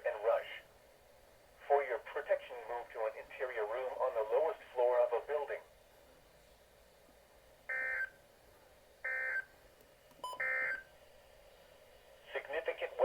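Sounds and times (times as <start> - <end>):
short data tone bursts: 10.2 - 10.9.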